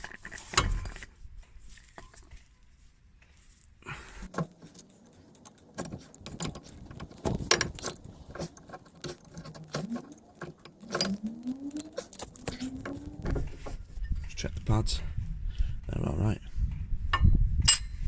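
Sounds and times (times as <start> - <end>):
metal clinks and rattles: 4.3 - 11.2
short rising tone: 10.8 - 13.9.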